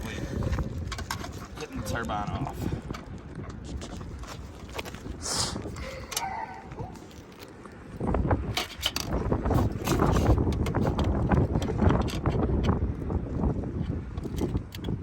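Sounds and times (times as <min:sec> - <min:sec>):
low rumbling handling noise: 0:00.0 - 0:15.0
metal rattling and clicking: 0:00.8 - 0:05.0, 0:08.5 - 0:12.8.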